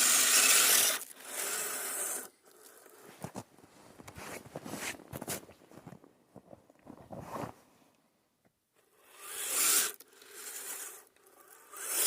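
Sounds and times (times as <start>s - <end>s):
electric motor whirring: 0.0s - 3.1s, 8.9s - 12.0s
tyres crunching snow: 0.8s - 7.6s.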